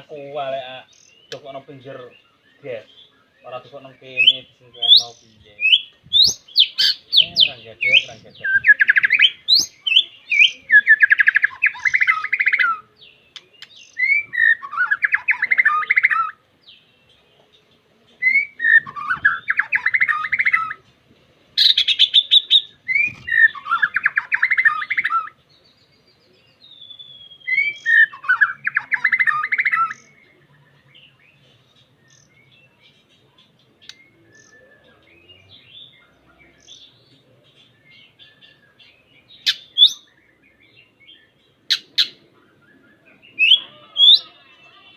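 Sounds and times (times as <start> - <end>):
songbird singing chattering phrases: 0.0 - 44.9.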